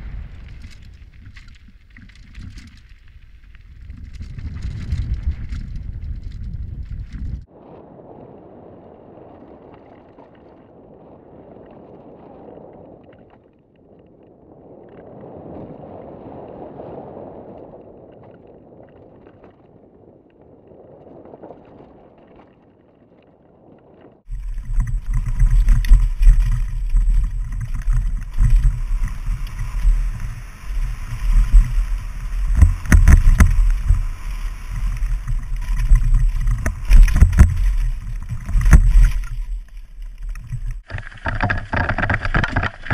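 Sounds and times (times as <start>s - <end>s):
rattling knocks from trail: 0.0s - 7.4s, 24.3s - 42.9s
wind buffeting microphone: 0.0s - 42.9s.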